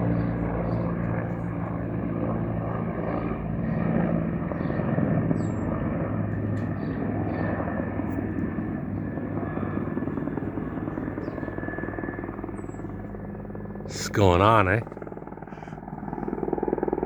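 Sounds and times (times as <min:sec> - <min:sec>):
propeller aircraft engines droning: 0:00.0 - 0:17.0
small birds chirping: 0:04.4 - 0:05.8, 0:06.6 - 0:07.6, 0:10.7 - 0:11.8, 0:12.5 - 0:13.1.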